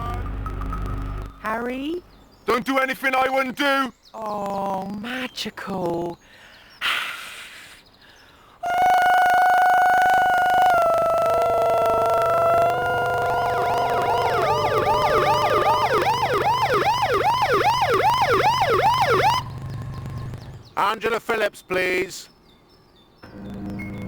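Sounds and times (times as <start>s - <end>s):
siren wailing and whooping: 8.7s - 20.6s.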